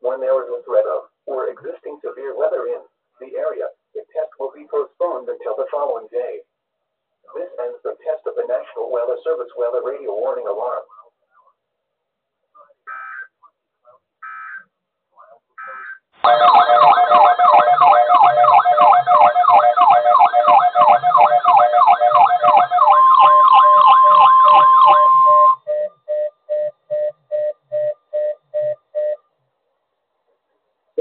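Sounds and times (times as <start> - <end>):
fast warbling siren alarm: 12.9 - 13.3, 14.2 - 14.7, 15.6 - 25.8
steady warning alarm tone: 15.6 - 29.2
short beeps: 23.0 - 29.2.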